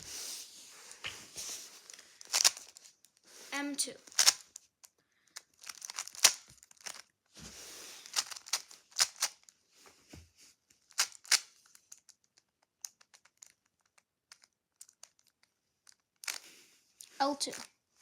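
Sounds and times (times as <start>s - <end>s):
plastic puzzle cube layers clicking: 2.3s - 2.6s, 4.0s - 4.4s, 5.4s - 7.1s, 8.1s - 9.4s, 10.9s - 16.4s.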